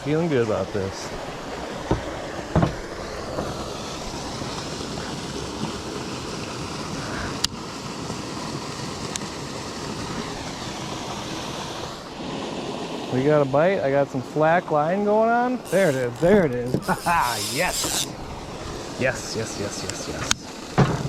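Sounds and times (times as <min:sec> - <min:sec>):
water pouring over spillway: 0:00.0 - 0:14.6.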